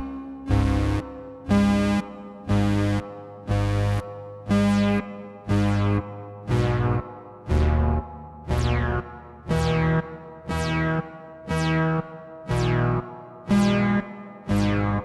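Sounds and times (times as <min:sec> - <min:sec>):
buzzy bass synthesizer notes: 0:03.5 - 0:15.0.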